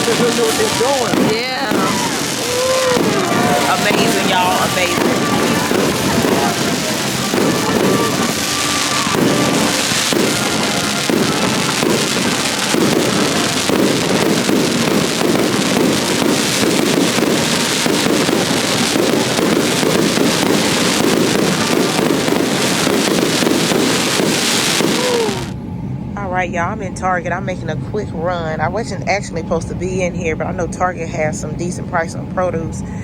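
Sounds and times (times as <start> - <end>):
fireworks popping and crackling: 0.0 - 25.6
rumbling haze: 0.0 - 33.0.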